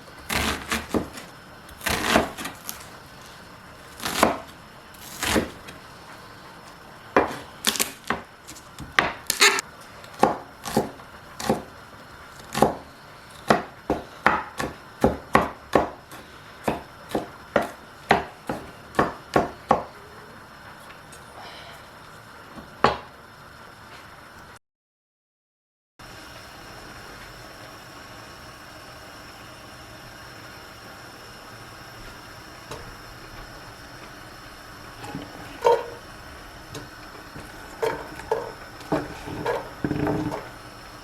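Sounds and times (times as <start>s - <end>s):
knife chopping on cutting board: 0.3s - 2.9s, 3.9s - 5.8s, 7.2s - 11.7s, 12.4s - 12.8s, 13.4s - 19.9s, 36.8s - 40.4s.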